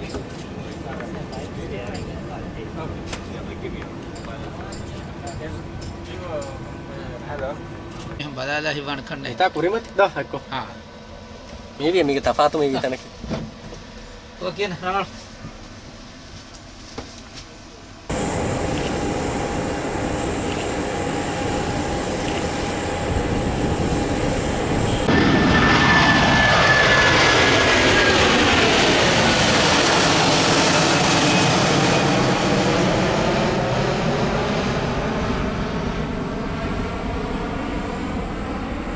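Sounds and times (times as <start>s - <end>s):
seaplane turboprop engines: 0.0s - 11.8s, 18.0s - 38.9s.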